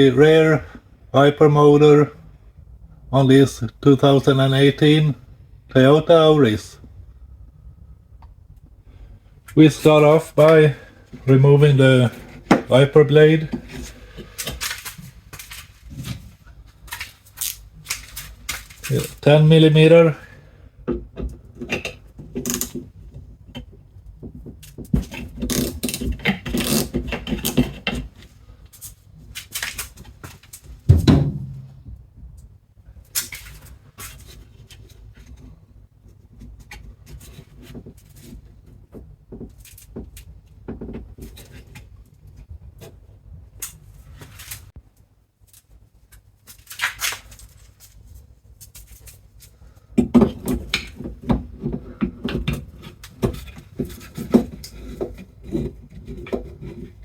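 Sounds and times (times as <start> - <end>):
loud thump: 30.9 - 32.0.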